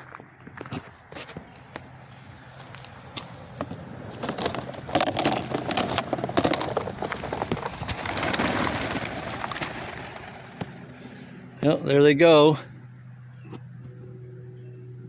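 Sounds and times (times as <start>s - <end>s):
pigeon wings flapping: 4.2s - 10.8s.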